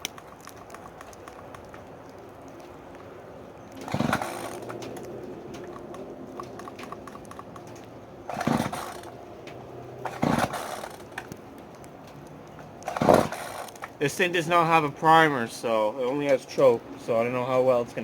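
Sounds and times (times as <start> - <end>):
engine pull cord rasping: 3.7 - 11.4, 12.8 - 14.0.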